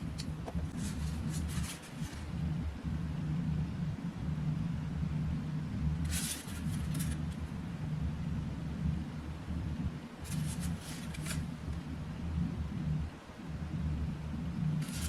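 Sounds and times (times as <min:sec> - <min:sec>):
steady low rumble: 0:00.0 - 0:15.0
packaging rustling and scraping: 0:00.7 - 0:02.4, 0:06.0 - 0:07.4, 0:10.3 - 0:11.6, 0:14.8 - 0:15.0.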